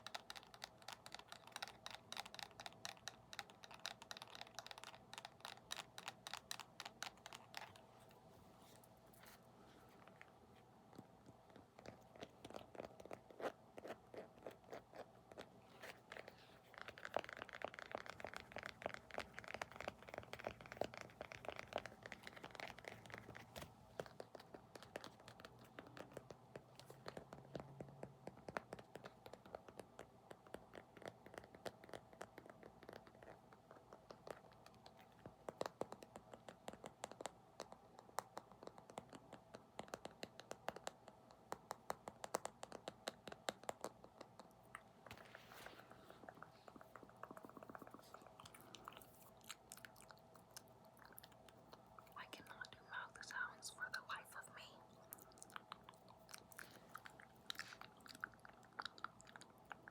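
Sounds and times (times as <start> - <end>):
scratching close to microphone: 45.1 - 49.4.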